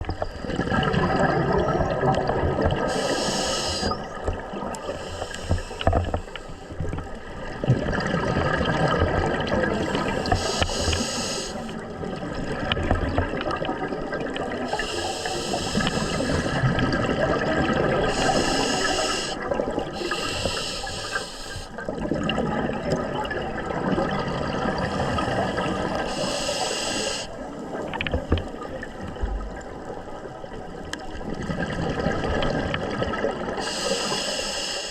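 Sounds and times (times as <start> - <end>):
bubbles gurgling from regulator: 0.0 - 34.3
high hiss of inhaled air: 2.9 - 4.1, 4.9 - 6.6, 9.8 - 11.7, 14.7 - 16.6, 18.1 - 19.4, 20.0 - 21.8, 25.0 - 27.4, 33.6 - 34.9.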